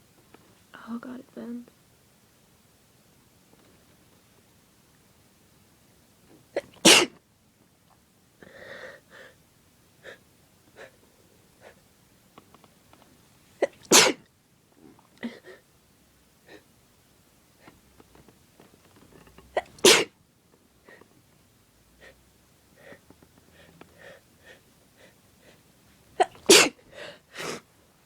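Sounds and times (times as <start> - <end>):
person sneezing: 6.6 - 7.2, 13.6 - 14.2, 19.6 - 20.1, 26.2 - 26.8.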